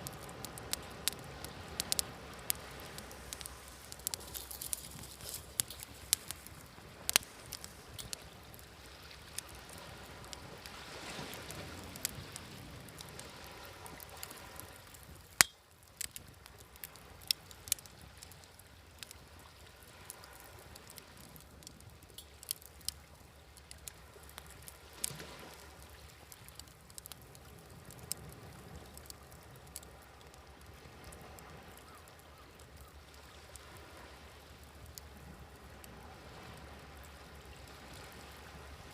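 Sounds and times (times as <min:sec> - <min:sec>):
fire pops: 0:00.0 - 0:08.7, 0:09.3 - 0:18.4
sea waves: 0:00.0 - 0:15.5, 0:16.1 - 0:23.0, 0:23.6 - 0:29.0, 0:33.0 - 0:38.9
wood fire crackling: 0:00.0 - 0:38.9.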